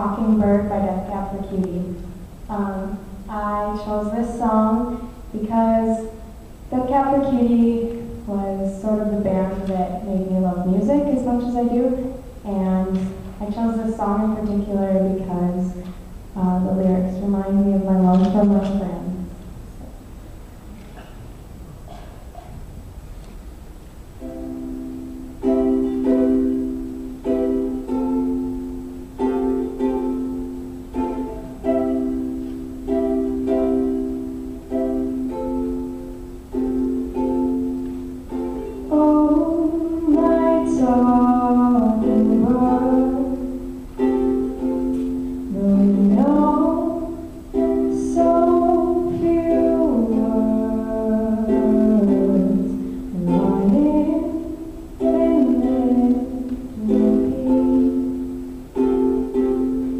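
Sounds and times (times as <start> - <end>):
plucked string instrument chords: 24.2 - 59.9
woman singing: 38.8 - 43.6, 45.5 - 58.3.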